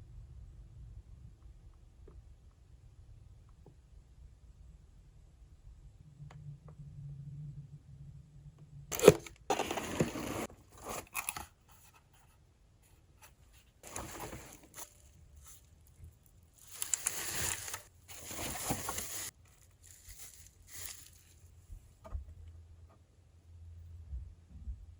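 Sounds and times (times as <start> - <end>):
packaging crinkling and tearing: 8.9 - 11.5, 13.8 - 15.6, 16.6 - 21.4.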